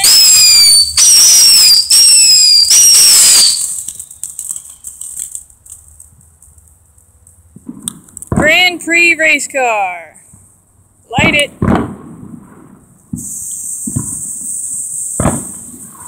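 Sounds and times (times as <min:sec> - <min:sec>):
whistling firework shrieking: 0:00.0 - 0:05.2, 0:13.1 - 0:16.0
firework crackles: 0:00.0 - 0:10.5, 0:11.1 - 0:16.0.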